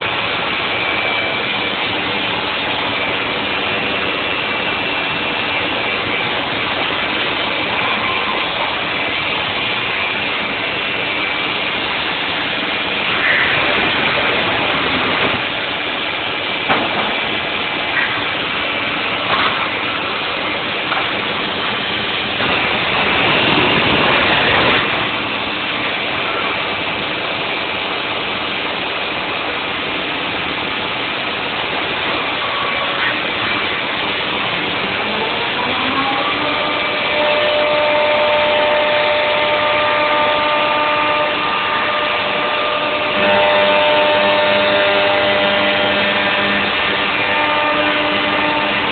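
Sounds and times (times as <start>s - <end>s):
rising machine whine: 0.0s - 27.0s
cnc router machine noise: 0.0s - 48.9s.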